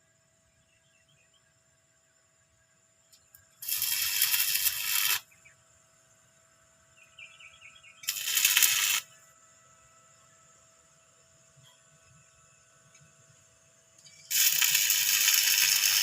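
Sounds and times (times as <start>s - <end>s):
fireworks crackling: 3.6s - 5.2s, 8.0s - 9.0s, 14.3s - 16.0s.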